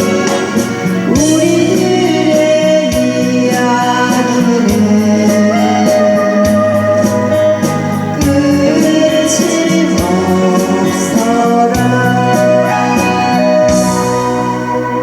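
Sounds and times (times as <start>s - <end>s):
karaoke music with beat: 0.0s - 15.0s
person singing: 0.0s - 15.0s.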